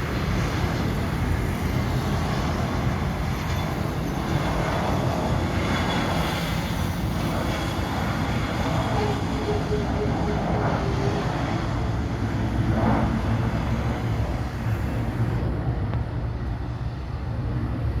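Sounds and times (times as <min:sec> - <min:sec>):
jet rolling on the ground: 0:00.0 - 0:18.0
faint held tone: 0:08.6 - 0:12.0.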